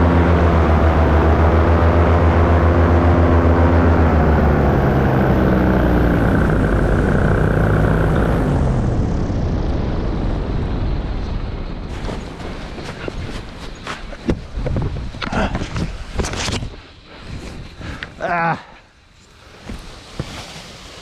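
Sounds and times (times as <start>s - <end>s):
propeller engine throttling back: 0.0s - 16.6s
wind rush: 0.0s - 18.1s.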